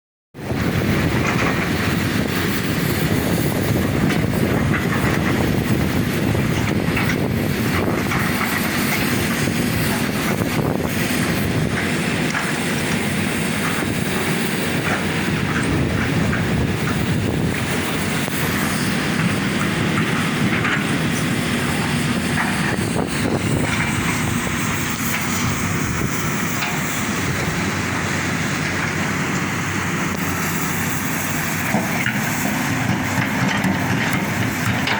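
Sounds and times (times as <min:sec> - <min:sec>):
earthmoving machine diesel engines: 0:00.4 - 0:34.9.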